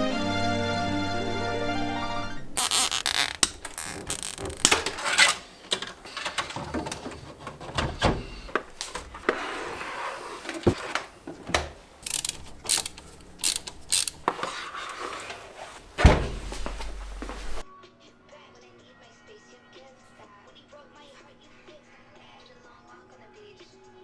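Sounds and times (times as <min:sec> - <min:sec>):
light rustling: 0:02.6 - 0:17.6
clicks and rattles of computer case: 0:03.2 - 0:17.6.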